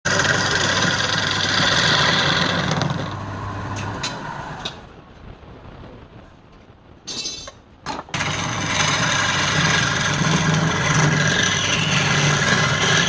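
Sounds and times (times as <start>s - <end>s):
wood lathe running: 0.1s - 4.6s, 8.2s - 13.0s.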